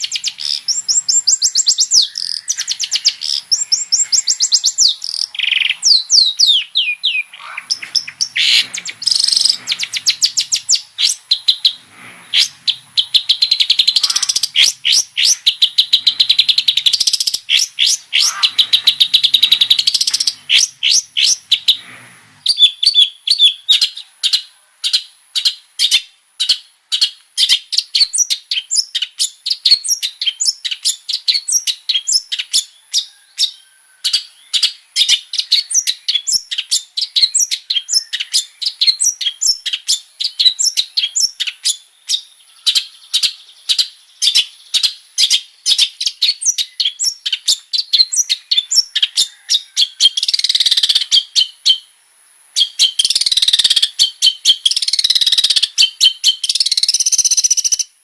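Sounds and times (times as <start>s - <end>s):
bird singing sharp chattering notes: 0.0s - 24.0s, 52.6s - 57.9s.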